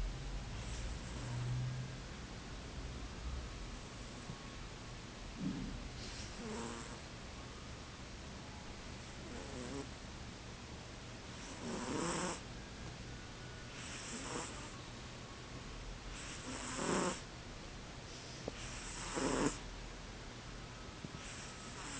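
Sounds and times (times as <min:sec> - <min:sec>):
cat snoring: 0:00.6 - 0:01.8, 0:05.4 - 0:07.0, 0:09.2 - 0:09.9, 0:11.3 - 0:12.4, 0:13.7 - 0:14.8, 0:16.1 - 0:17.3, 0:18.5 - 0:19.6, 0:21.2 - 0:21.9.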